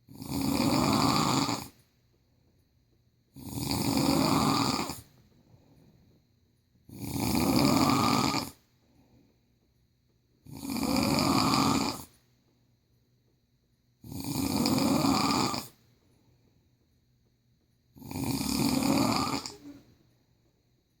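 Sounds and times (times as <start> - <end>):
person snoring: 0.1 - 1.8, 3.4 - 5.1, 6.9 - 8.6, 10.4 - 12.2, 14.0 - 15.8, 18.0 - 19.8.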